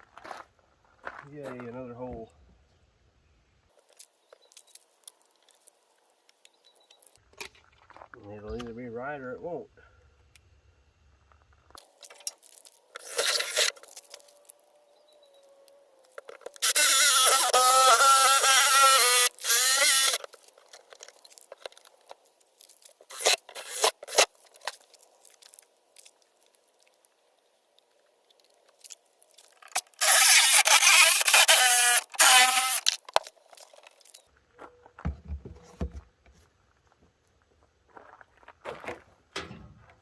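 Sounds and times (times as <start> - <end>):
power drill cutting plastic: 13.0 - 13.8, 16.5 - 20.3, 23.1 - 24.3, 29.6 - 33.3
light knocks and handling: 35.0 - 36.4.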